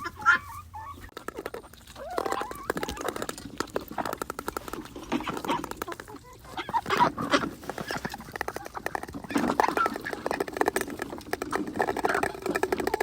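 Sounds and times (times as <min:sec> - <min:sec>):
farm birds calling: 0:00.0 - 0:13.0
patter of small clicks: 0:01.1 - 0:06.2.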